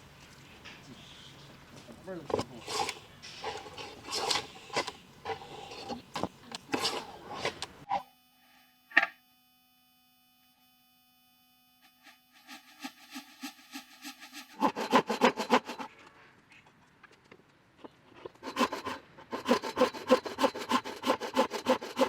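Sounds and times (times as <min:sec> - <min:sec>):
hand tool rasping wood: 0:02.3 - 0:07.9, 0:14.4 - 0:15.9, 0:17.8 - 0:22.0.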